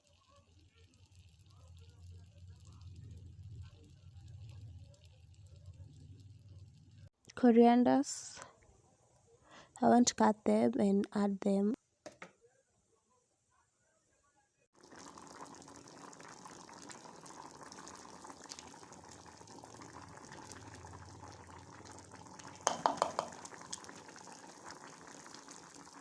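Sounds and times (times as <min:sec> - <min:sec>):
pot simmering and bubbling: 0:00.0 - 0:07.2, 0:14.7 - 0:26.0
sharp knocks: 0:22.7 - 0:23.4.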